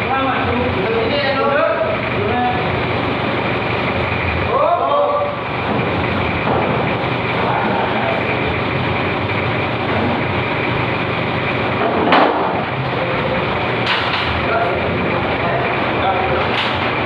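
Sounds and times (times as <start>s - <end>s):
loud mechanical noise: 0.0s - 17.0s.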